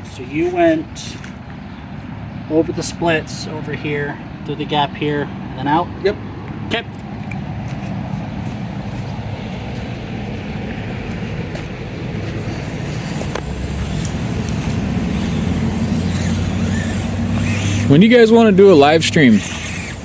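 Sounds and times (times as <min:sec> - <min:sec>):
vehicle engine running: 0:07.8 - 0:20.0.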